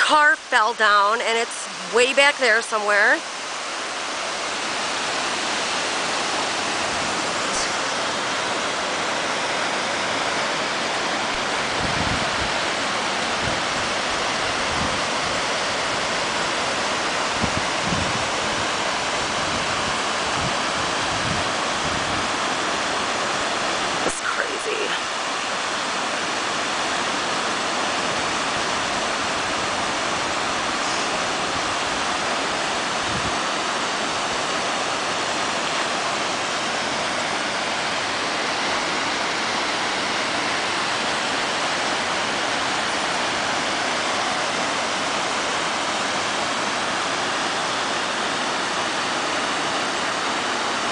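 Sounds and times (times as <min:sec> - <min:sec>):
waterfall rushing onto rock: 0:00.0 - 0:50.9.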